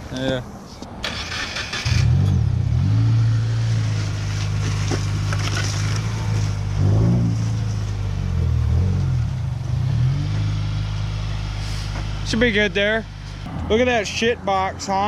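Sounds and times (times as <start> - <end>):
car engine running: 1.8 - 13.5.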